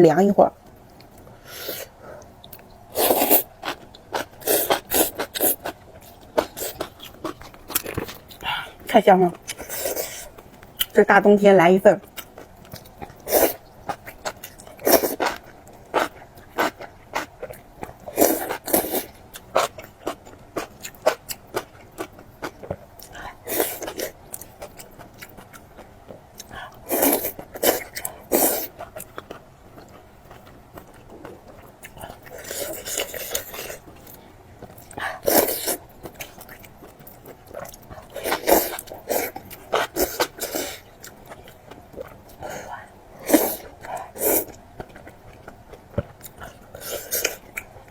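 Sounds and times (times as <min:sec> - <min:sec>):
chewing with mouth clicks: 0:00.6 - 0:11.0, 0:12.0 - 0:47.9.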